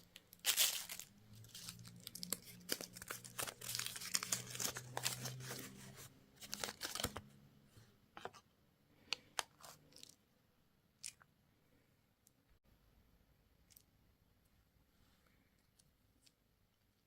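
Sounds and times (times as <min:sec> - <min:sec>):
wrapper tearing and crinkling: 0:00.0 - 0:07.2.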